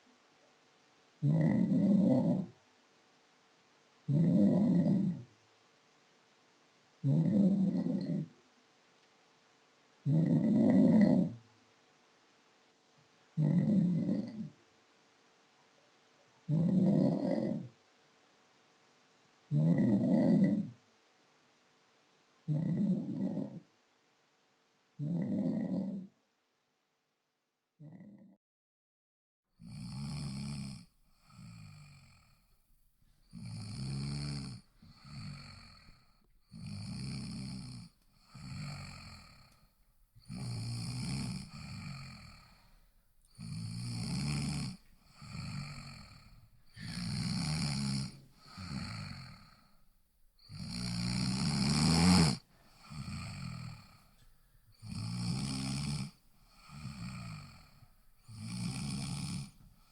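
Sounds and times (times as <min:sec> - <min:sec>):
person snoring: 0:01.2 - 0:02.6, 0:04.1 - 0:05.3, 0:07.0 - 0:08.4, 0:10.0 - 0:11.4, 0:13.4 - 0:14.6, 0:16.5 - 0:17.8, 0:19.5 - 0:20.8, 0:22.5 - 0:23.7, 0:25.0 - 0:26.1, 0:29.6 - 0:32.4, 0:33.2 - 0:59.9.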